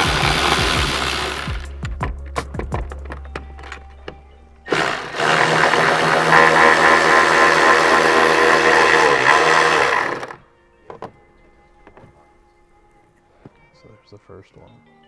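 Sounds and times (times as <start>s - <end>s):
power tool driving screw: 0.0s - 1.8s, 3.4s - 11.2s.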